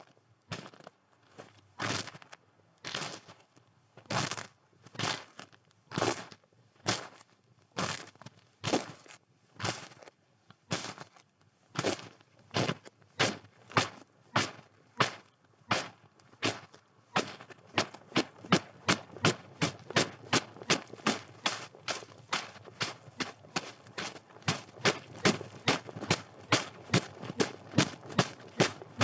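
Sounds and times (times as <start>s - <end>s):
footsteps crunching in snow: 17.2s - 29.0s.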